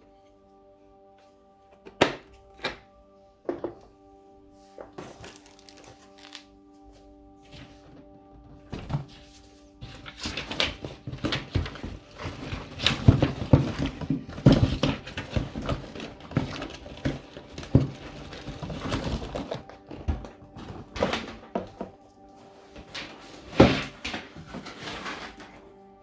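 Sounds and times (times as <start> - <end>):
packaging rustling: 5.0 - 6.5, 8.7 - 25.8.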